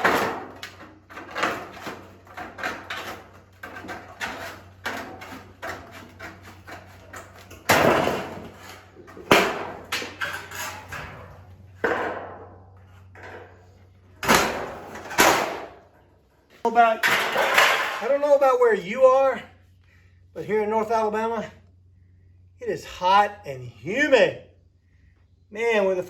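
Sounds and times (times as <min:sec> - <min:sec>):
clicks and knocks of roofing offcuts: 0:00.0 - 0:16.0.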